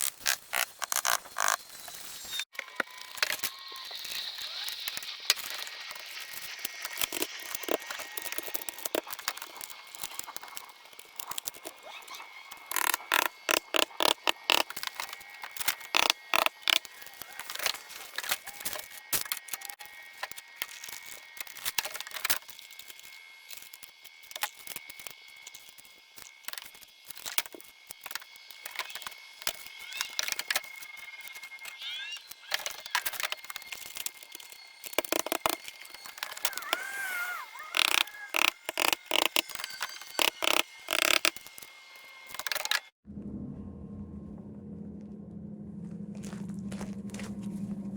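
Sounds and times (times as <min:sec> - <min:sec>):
sharp clicks and knocks: 0:12.6 - 0:16.9, 0:32.5 - 0:36.8, 0:37.8 - 0:41.7.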